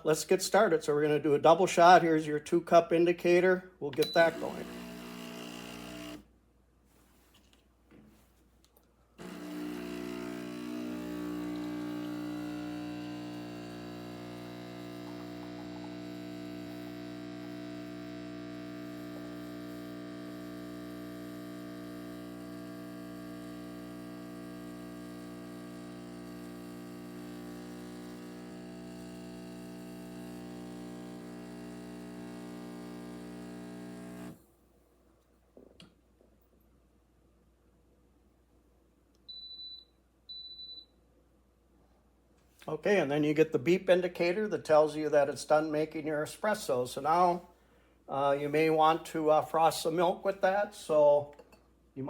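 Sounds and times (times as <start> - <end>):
espresso machine pump humming: 4.0 - 6.2, 9.2 - 34.4.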